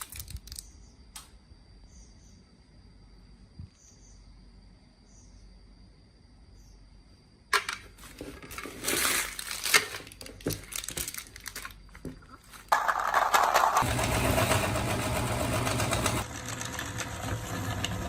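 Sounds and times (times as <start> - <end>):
candy clicking and rattling: 0.0 - 0.7, 8.4 - 13.8
plastic candy packaging crinkling: 0.0 - 0.7, 8.0 - 13.8.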